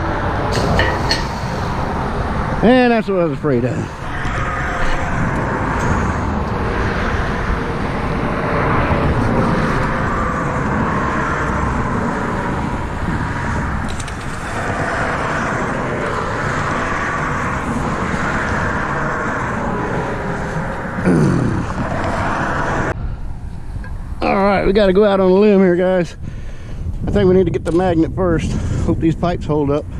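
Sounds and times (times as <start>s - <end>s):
car passing by: 0.0s - 23.0s
road traffic: 0.0s - 27.0s.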